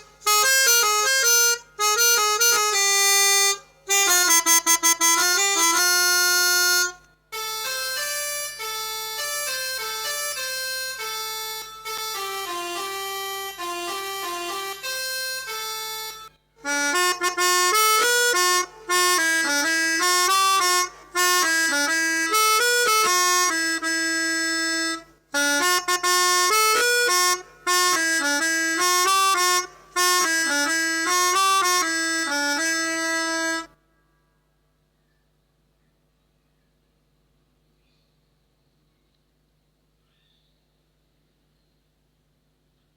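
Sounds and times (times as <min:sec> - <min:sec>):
melodica playing bus-horn melody: 0:00.0 - 0:33.8.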